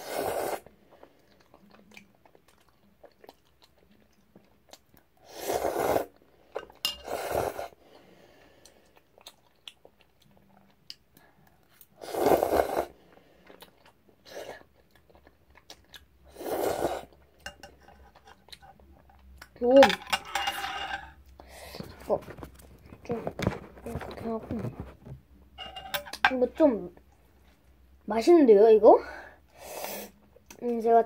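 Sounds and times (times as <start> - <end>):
person chewing noodles: 0.1 - 17.4.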